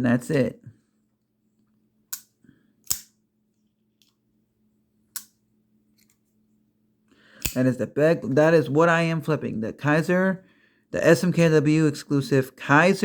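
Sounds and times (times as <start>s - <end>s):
pocket knife clicking open and shut: 2.1s - 3.1s, 5.2s - 5.4s, 7.4s - 7.6s.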